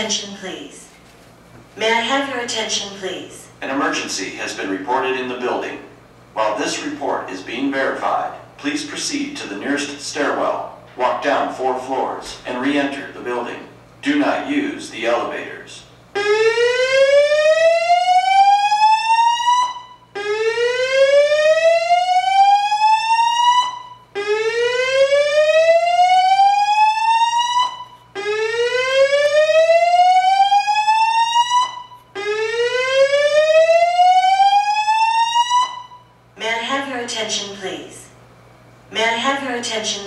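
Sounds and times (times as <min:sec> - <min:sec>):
fire alarm whoop tone: 0:16.2 - 0:36.2.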